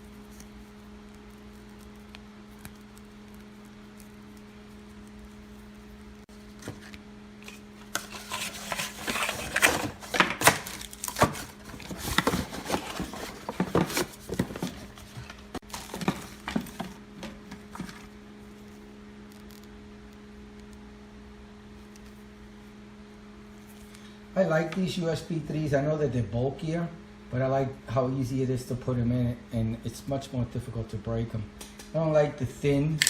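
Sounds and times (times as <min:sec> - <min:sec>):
low electrical hum: 0:00.0 - 0:33.0
plastic packaging rustling: 0:07.9 - 0:17.0.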